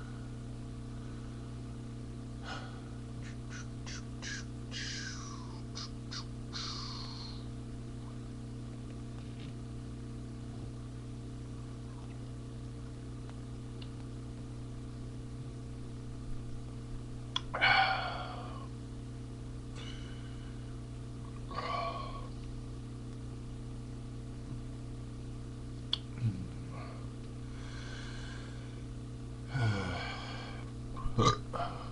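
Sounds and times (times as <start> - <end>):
steady electrical hum: 0.0 - 31.9
loud rough burp: 31.1 - 31.5.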